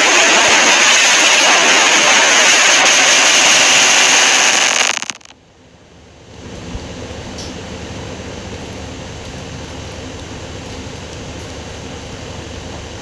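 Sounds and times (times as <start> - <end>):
harsh static alarm noise: 0.0 - 5.4, 6.9 - 13.0
low buzz: 0.0 - 5.4.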